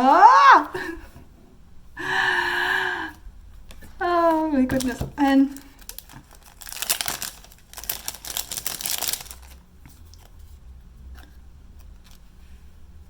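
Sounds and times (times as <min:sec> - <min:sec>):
packaging crinkling: 0:04.2 - 0:10.4.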